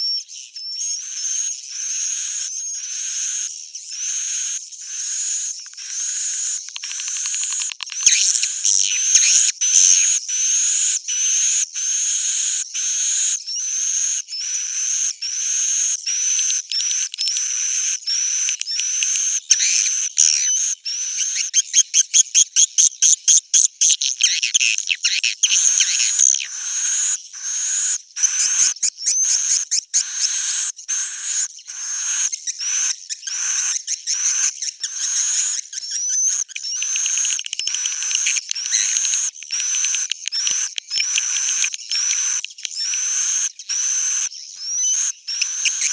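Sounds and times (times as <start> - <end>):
swiftlets twittering: 34.4 - 45.9.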